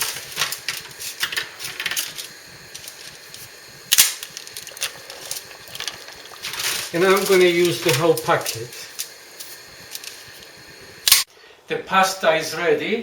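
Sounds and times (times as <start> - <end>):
dry pasta cracking: 0.0 - 9.1.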